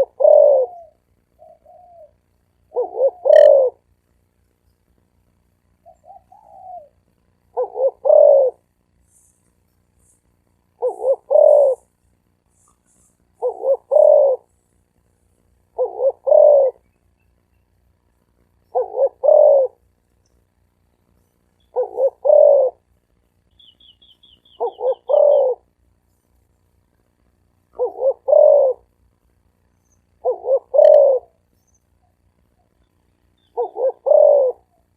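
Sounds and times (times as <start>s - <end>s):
dove cooing: 0.0s - 3.9s, 5.8s - 9.3s, 10.0s - 11.9s, 12.7s - 14.5s, 15.7s - 16.9s, 18.7s - 19.8s, 21.6s - 22.8s, 23.6s - 25.8s, 27.7s - 29.0s, 30.1s - 34.9s.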